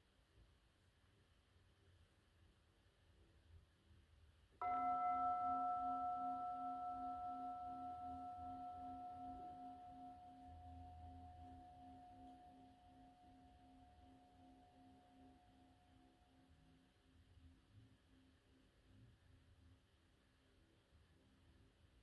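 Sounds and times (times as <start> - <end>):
singing bowl bell ringing: 4.6 - 16.5.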